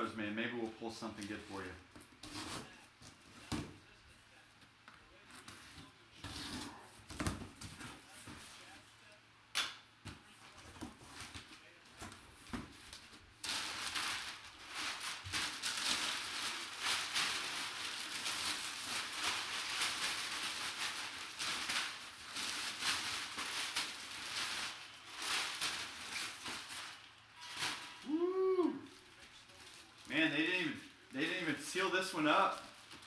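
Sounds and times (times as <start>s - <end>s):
packaging rustling and crinkling: 1.0s - 4.4s, 10.5s - 33.0s
short vocal sound: 28.0s - 28.9s.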